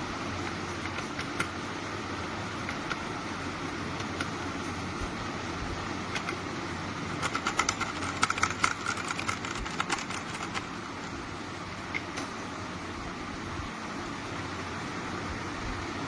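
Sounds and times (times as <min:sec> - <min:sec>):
steady background hum: 0:00.0 - 0:16.0
mechanical keyboard key clicks: 0:07.2 - 0:10.7.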